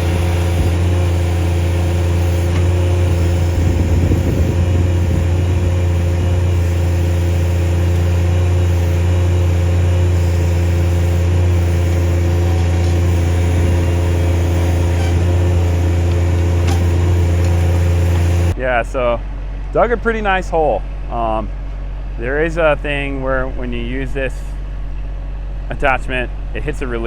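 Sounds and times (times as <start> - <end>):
hydraulic valve squeal: 0.0 - 18.5
diesel engine under load: 0.0 - 27.0.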